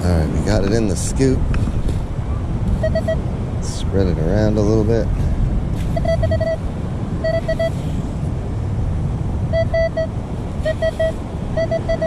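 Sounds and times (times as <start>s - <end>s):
low rumble: 0.0s - 10.8s
metal detector beeps: 2.8s - 3.2s, 5.9s - 6.6s, 7.2s - 7.8s, 9.5s - 12.0s.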